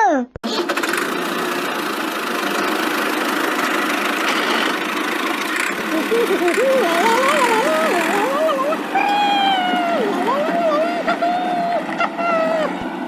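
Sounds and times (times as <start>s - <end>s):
cartoon vehicle engine: 0.4s - 13.0s
wavering sliding pitched tone: 5.5s - 13.0s.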